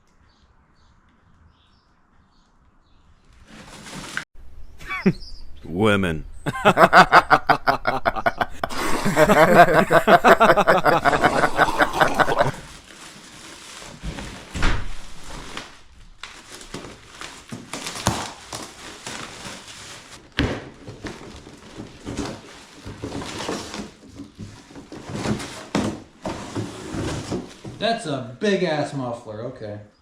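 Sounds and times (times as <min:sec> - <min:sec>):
packaging rustling and knocking: 0:03.4 - 0:04.3, 0:10.0 - 0:27.9
person chuckling: 0:04.8 - 0:05.2, 0:06.5 - 0:12.7.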